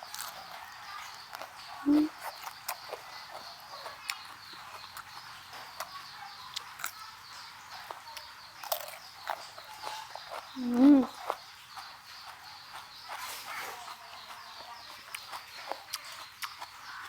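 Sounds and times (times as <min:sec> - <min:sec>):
chewing crunches: 0:00.0 - 0:17.0
faint bird chirping: 0:00.0 - 0:17.0.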